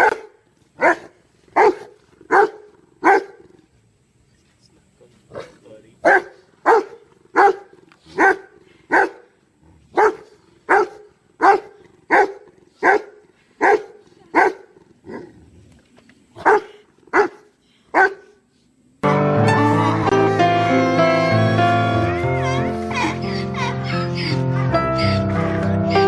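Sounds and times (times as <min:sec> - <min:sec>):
dog barking: 0:00.0 - 0:03.4, 0:05.4 - 0:09.3, 0:10.0 - 0:15.3, 0:16.4 - 0:18.4
music: 0:19.0 - 0:26.0.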